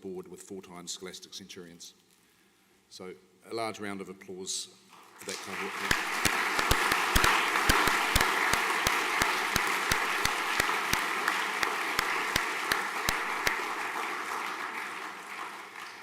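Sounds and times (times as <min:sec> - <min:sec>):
audience applause: 0:05.2 - 0:16.0
nearby person clapping: 0:05.2 - 0:16.0.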